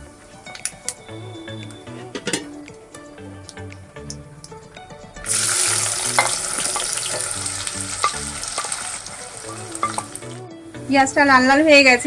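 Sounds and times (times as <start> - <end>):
spatula scraping and stirring: 1.9 - 2.6, 5.3 - 10.3
onions sizzling in hot oil: 5.2 - 12.0.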